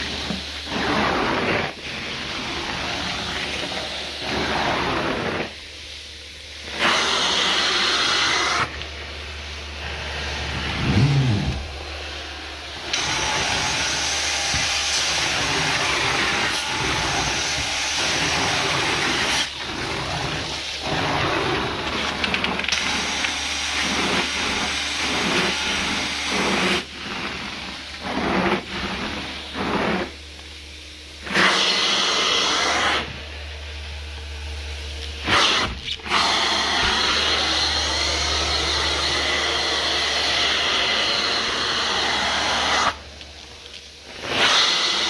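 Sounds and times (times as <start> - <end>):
vacuum suction hissing: 0.0 - 21.8
constant low hum: 8.6 - 31.3, 33.0 - 40.2, 43.0 - 44.3.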